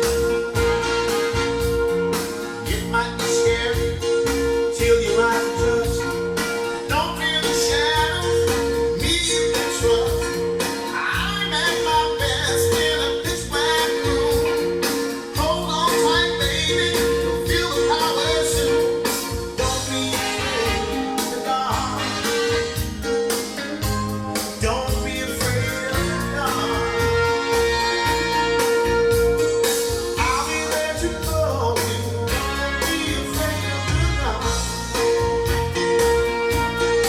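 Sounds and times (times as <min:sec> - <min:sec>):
blues band with singing: 0:00.0 - 0:37.0.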